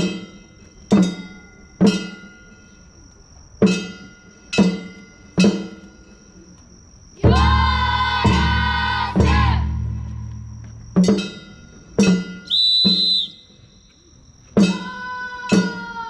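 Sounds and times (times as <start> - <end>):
metallic percussion strikes: 0.0 - 2.9, 3.6 - 6.4, 7.2 - 12.5
chorus of voices calling: 7.2 - 9.8.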